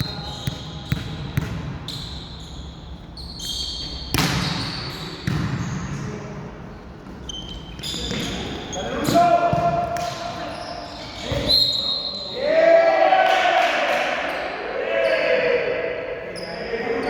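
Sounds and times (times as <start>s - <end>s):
sneakers squeaking on court floor: 0.0s - 6.1s, 7.0s - 12.4s
volleyball struck with smack: 4.2s - 4.6s.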